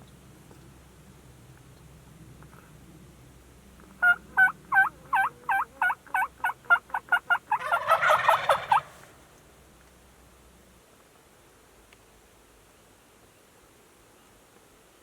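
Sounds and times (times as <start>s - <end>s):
turkey yelping: 4.0s - 9.2s.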